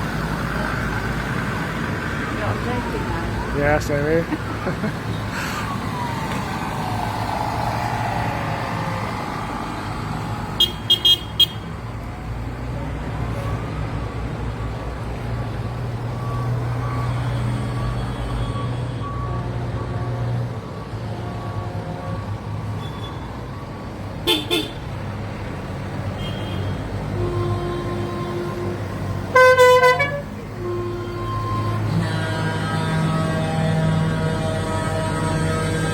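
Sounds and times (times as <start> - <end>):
tractor engines rumbling: 0.0 - 35.9
vehicle horn tooting: 10.6 - 11.7, 24.3 - 24.8, 26.2 - 31.8.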